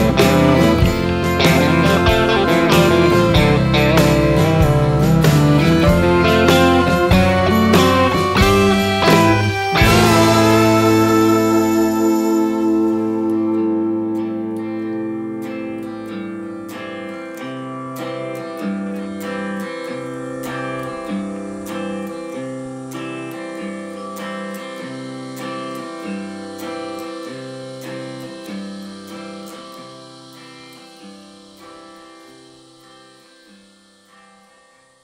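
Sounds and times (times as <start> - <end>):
alternating bass line: 0.0 - 15.8
picked guitars: 0.0 - 35.0.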